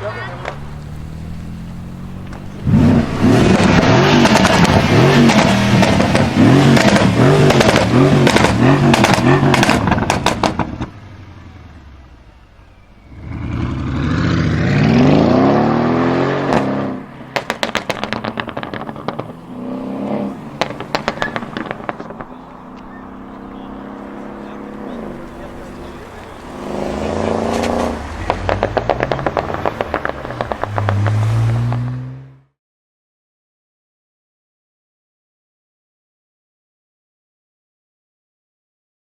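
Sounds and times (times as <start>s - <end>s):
exhaust crackles and pops: 0.0s - 11.1s, 16.5s - 19.6s, 20.2s - 31.9s
car engine revving: 0.0s - 32.6s.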